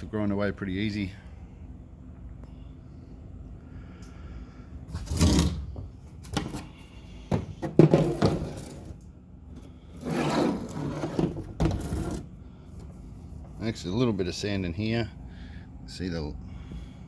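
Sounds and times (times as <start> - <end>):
scraping on motorcycle fairing: 10.0 - 12.3.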